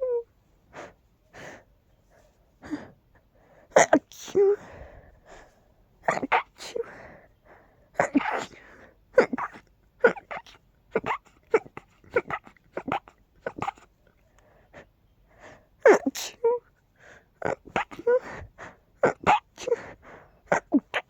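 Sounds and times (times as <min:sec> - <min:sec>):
person sneezing: 0:08.0 - 0:08.6, 0:19.0 - 0:19.9.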